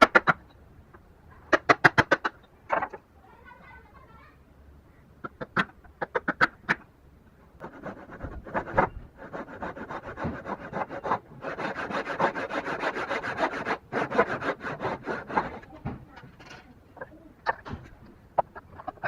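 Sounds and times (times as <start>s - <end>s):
hand saw cutting wood: 7.6s - 15.9s.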